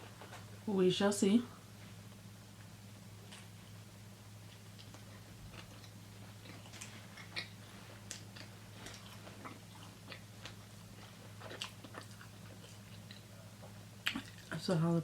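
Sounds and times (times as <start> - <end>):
steady low hum: 0.0 - 15.0
close chewing with mouth clicks: 4.4 - 14.6.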